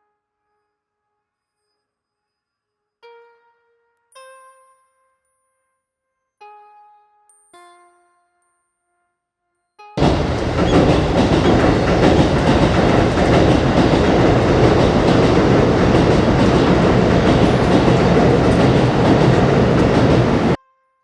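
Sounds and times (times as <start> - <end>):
train rumbling overhead: 10.0 - 20.6.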